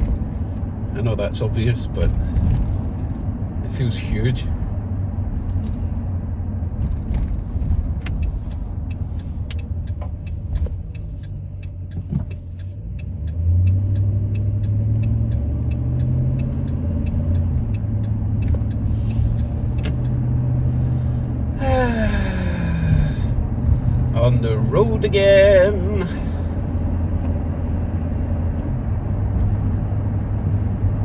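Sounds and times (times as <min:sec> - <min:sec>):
truck engine running: 0:00.0 - 0:28.2
regular clicking: 0:06.9 - 0:20.2.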